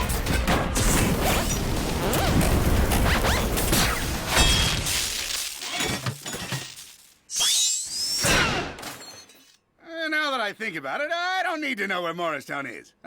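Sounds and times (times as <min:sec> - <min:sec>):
crashing shattering impacts: 0:00.8 - 0:07.2.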